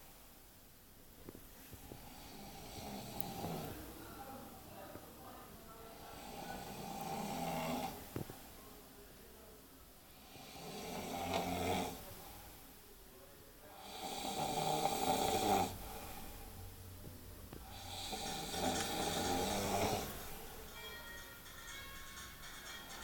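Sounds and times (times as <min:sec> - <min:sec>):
person snoring: 0:01.9 - 0:03.9, 0:06.0 - 0:08.2, 0:10.1 - 0:12.2, 0:13.8 - 0:16.4, 0:17.6 - 0:20.7.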